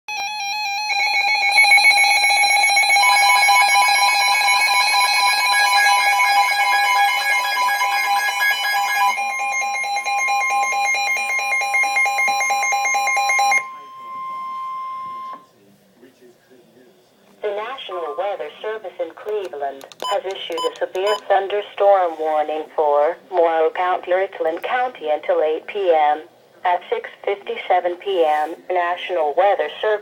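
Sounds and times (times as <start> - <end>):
harsh two-pitch electronic alarm: 0.1 - 15.5, 20.0 - 21.3.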